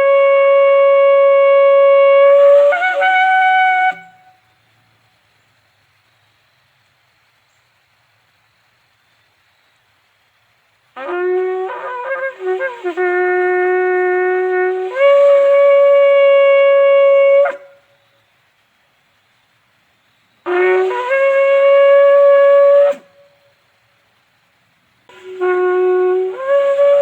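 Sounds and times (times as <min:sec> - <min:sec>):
shofar blasts: 0:00.0 - 0:04.5, 0:11.0 - 0:17.9, 0:20.4 - 0:23.5, 0:25.1 - 0:27.0.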